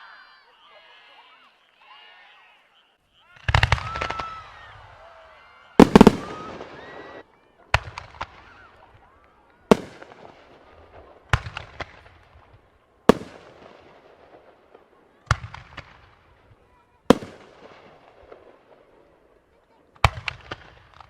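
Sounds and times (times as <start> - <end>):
quick firework pops: 5.8 - 7.0, 20.0 - 21.0
firework shells bursting: 5.8 - 8.5, 9.7 - 19.2.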